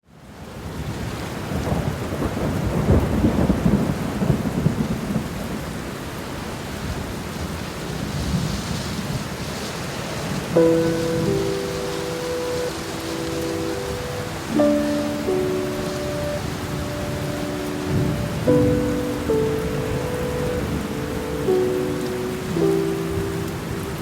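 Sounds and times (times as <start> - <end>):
steady rain: 0.0 - 24.0
thunder rumble: 1.5 - 5.8, 7.9 - 24.0
sustained musical notes: 10.6 - 24.0.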